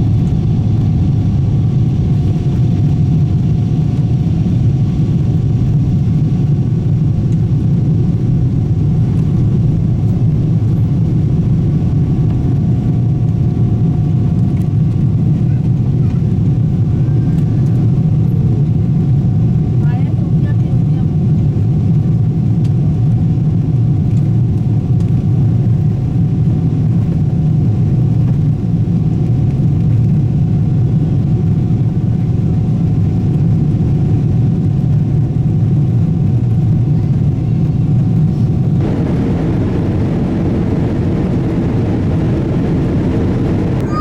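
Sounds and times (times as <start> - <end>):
airplane cabin engine rumble: 0.0 - 44.0
faint steady hum: 38.7 - 44.0.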